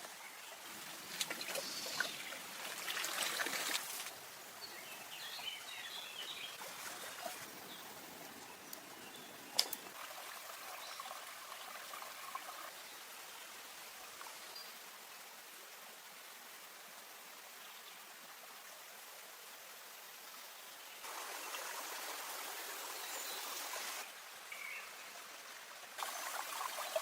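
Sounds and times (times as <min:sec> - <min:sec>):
stream water trickling: 0:00.0 - 0:27.0.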